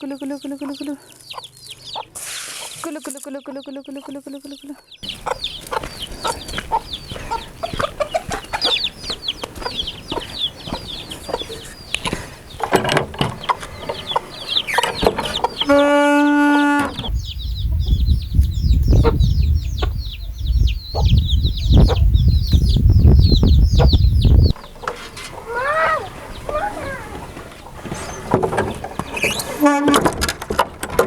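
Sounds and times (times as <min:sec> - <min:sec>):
chickens clucking: 0:00.0 - 0:31.0
steady pitched call: 0:14.1 - 0:17.1, 0:25.4 - 0:27.4
low rumbling noise: 0:16.8 - 0:25.5.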